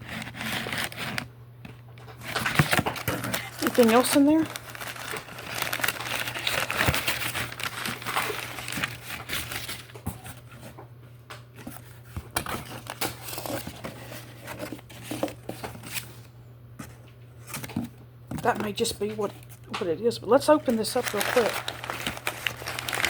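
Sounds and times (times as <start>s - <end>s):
packing material crinkling: 0.0s - 1.3s, 2.0s - 10.4s, 11.6s - 16.3s, 20.5s - 23.0s.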